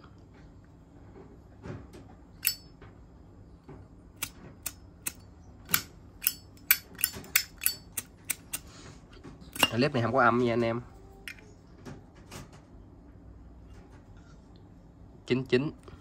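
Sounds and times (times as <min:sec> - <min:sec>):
lighter lid metallic clicks: 0:04.2 - 0:08.6.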